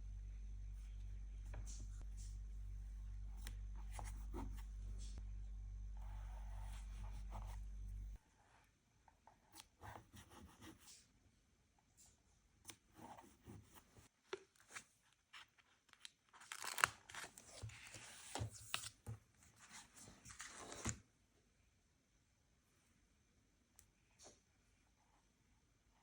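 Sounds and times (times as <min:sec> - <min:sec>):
paper tearing and rustling: 0:16.4 - 0:18.9.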